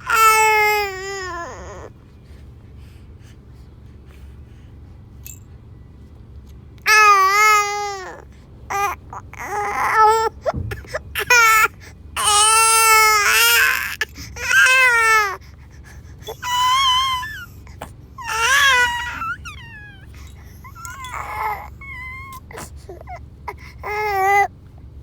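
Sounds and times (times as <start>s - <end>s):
baby crying wails: 0.0s - 1.9s, 6.9s - 15.4s, 16.3s - 17.6s, 18.2s - 24.5s.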